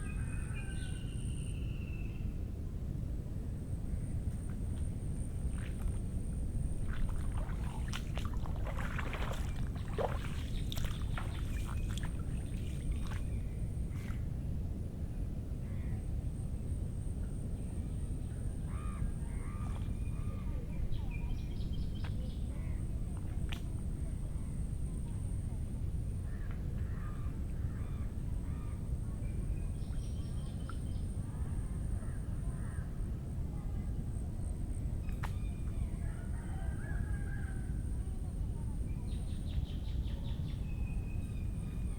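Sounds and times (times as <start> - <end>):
steady low rumble: 2.0 - 36.4
footsteps on muddy ground: 6.7 - 13.2.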